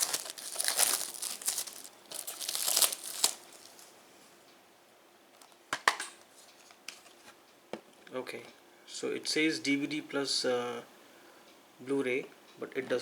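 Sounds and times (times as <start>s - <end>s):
plastic wrap crinkling and tearing: 0.0s - 3.9s.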